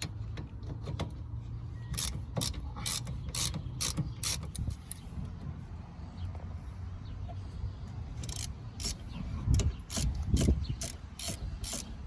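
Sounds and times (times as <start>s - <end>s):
ratchet wrench clicking: 2.0s - 5.0s, 8.2s - 9.0s, 9.6s - 12.0s.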